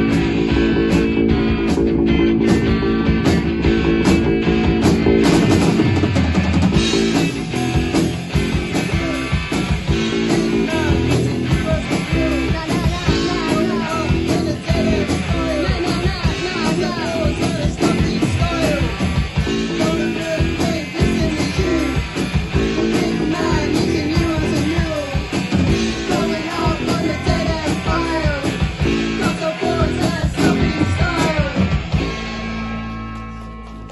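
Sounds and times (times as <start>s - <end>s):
rock music with guitar and drums: 0.0s - 33.9s
singing voice: 8.5s - 32.0s.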